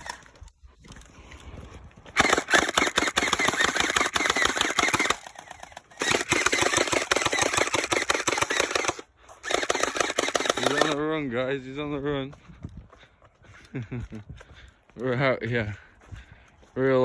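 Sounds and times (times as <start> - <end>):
gel blaster rapid clicking: 2.2 - 11.0.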